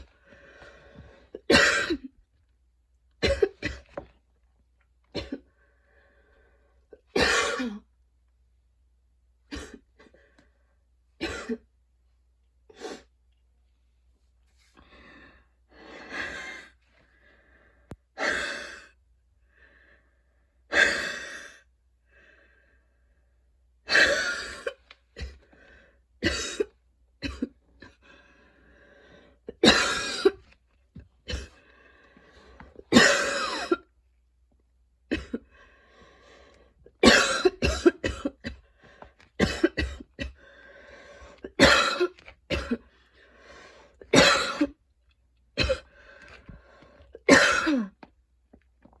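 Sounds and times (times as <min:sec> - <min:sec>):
woman coughing: 0:01.5 - 0:02.1, 0:07.2 - 0:07.8, 0:11.2 - 0:11.6, 0:26.2 - 0:27.6, 0:29.5 - 0:30.4, 0:32.9 - 0:33.8, 0:35.1 - 0:35.4, 0:37.0 - 0:38.6, 0:39.4 - 0:40.4, 0:41.6 - 0:42.8, 0:44.1 - 0:44.8, 0:47.2 - 0:48.0
wheezy breaths: 0:27.8 - 0:29.5, 0:35.4 - 0:37.0, 0:40.3 - 0:41.6, 0:42.9 - 0:44.1, 0:45.8 - 0:47.2.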